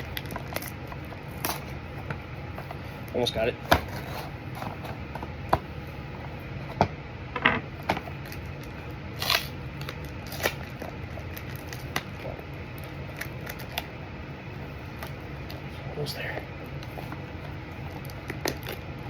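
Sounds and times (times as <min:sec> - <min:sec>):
cardboard and tape scraping: 0:03.7 - 0:05.0.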